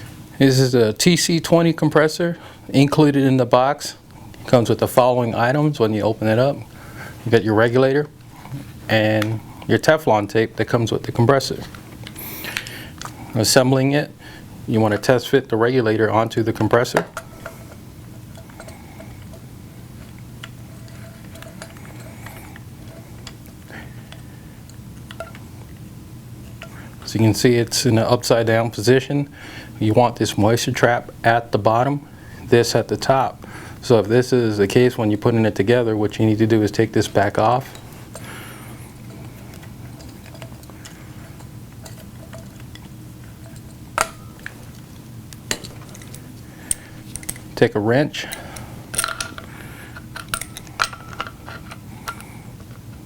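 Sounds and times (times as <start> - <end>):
low steady hum: 0.0 - 53.0
metallic clicks of handled regulator: 45.4 - 52.8
faint metallic clicks and clinks: 45.5 - 47.6.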